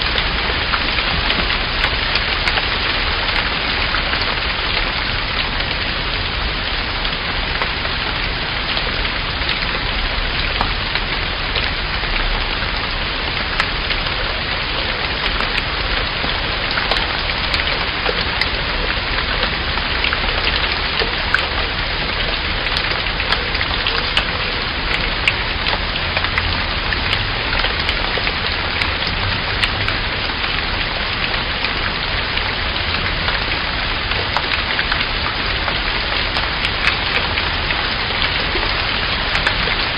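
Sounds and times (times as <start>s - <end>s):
rain drops pattering on a surface: 0.0s - 39.9s.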